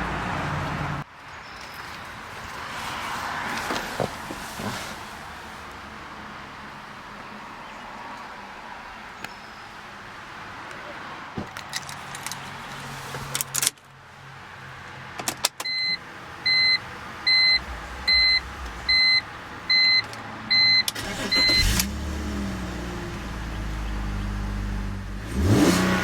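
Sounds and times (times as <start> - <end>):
car warning chime beeping: 15.6 - 21.8
car engine starting and idling: 15.6 - 26.0.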